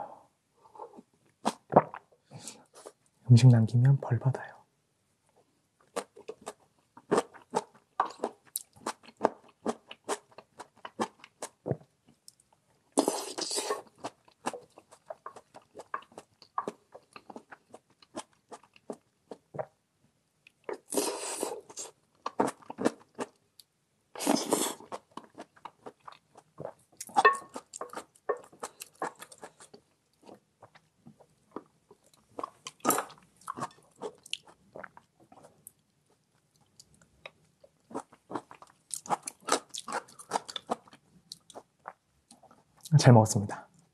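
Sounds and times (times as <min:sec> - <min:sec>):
person chewing: 0:05.9 - 0:11.7, 0:12.3 - 0:19.7, 0:20.7 - 0:23.4, 0:24.2 - 0:30.9, 0:31.5 - 0:35.8, 0:36.6 - 0:42.9.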